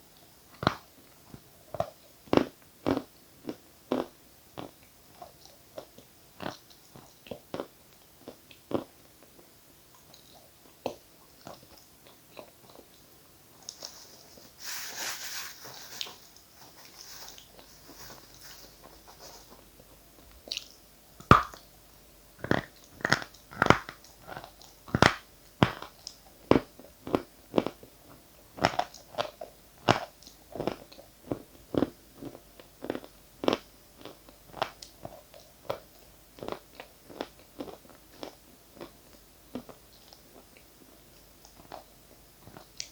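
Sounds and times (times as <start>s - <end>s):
crunching chews: 0.6s - 9.4s, 22.4s - 40.6s
soft rustle: 13.6s - 19.8s.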